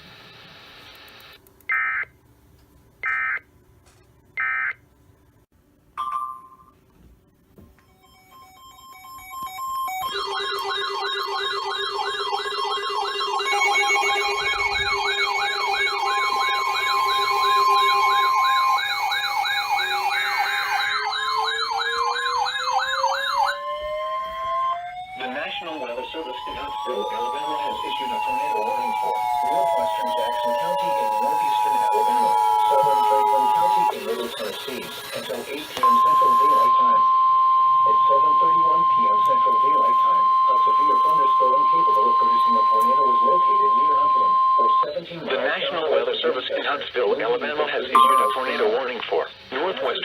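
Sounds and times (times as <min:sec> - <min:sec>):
siren winding up: 0:07.8 - 0:44.9
electronic sirens warbling: 0:07.9 - 0:45.1
data burst tones: 0:08.0 - 0:23.6, 0:25.1 - 0:45.3.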